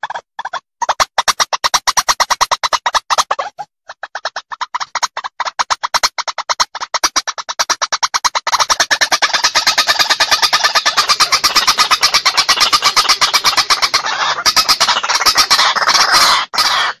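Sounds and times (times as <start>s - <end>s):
waterhen calling in harsh pulses: 7.0s - 17.0s.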